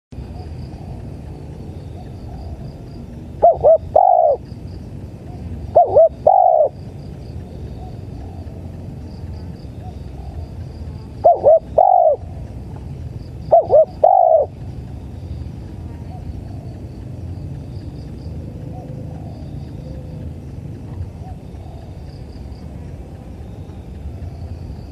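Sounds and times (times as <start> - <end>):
dove cooing: 0.2 - 4.6, 5.3 - 6.8, 7.6 - 8.8, 9.7 - 14.7, 18.4 - 20.2, 21.1 - 22.2
crickets chirping: 0.2 - 24.9.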